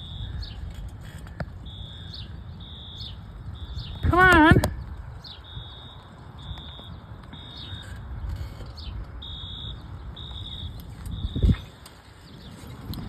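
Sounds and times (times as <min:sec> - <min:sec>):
fire alarm horn beeping: 0:01.6 - 0:08.0, 0:09.2 - 0:11.6.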